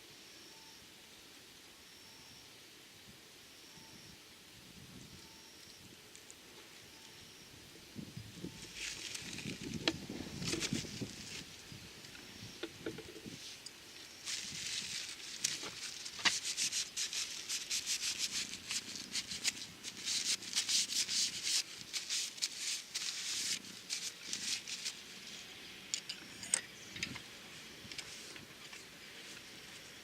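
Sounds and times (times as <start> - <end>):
scratchy rubbing on a surface: 15.8 - 24.9.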